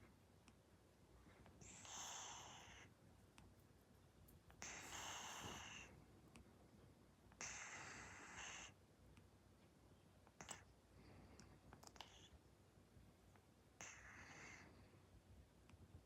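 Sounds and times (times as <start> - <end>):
cat snoring faintly: 1.6 - 2.9, 4.6 - 6.0, 7.4 - 8.8, 13.8 - 15.0.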